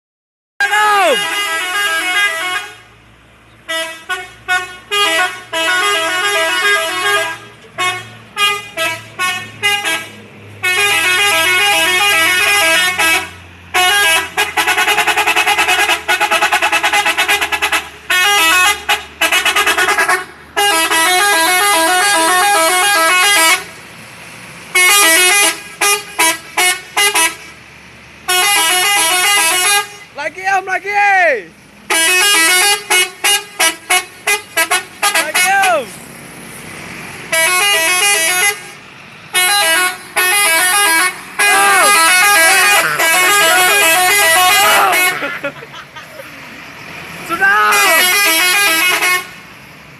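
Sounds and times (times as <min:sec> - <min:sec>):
bus musical horn playing tunes: 0:00.6 - 0:23.8, 0:24.7 - 0:27.6, 0:28.2 - 0:30.2, 0:31.8 - 0:36.0, 0:37.3 - 0:45.9, 0:47.0 - 0:49.5.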